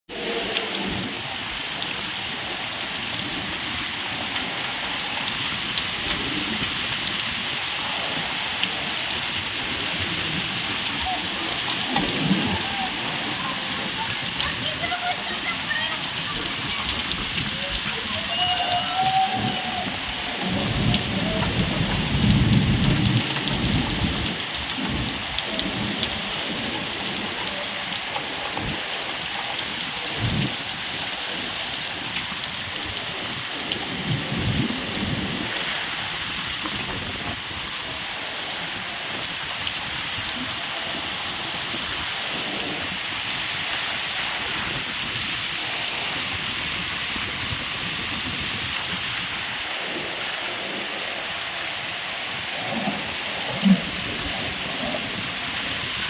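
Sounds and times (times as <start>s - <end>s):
heavy rain pattering: 0.1s - 56.0s
low rumbles: 6.0s - 27.2s.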